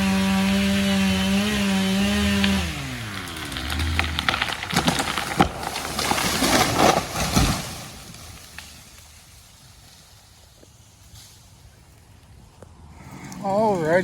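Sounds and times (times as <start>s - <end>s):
wood cracking: 0.4s - 12.0s
branches crashing: 1.1s - 12.0s
tree trunk thudding on ground: 3.1s - 8.8s.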